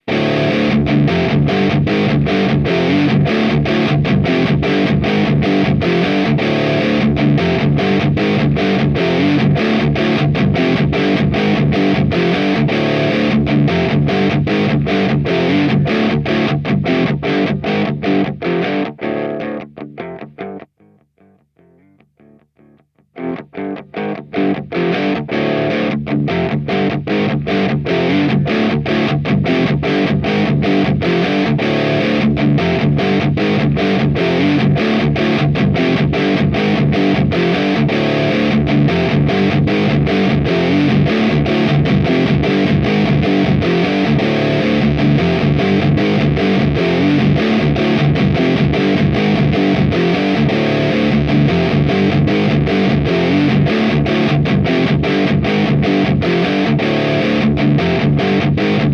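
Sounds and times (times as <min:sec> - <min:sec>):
distorted electric guitar riff: 0:00.0 - 0:58.9.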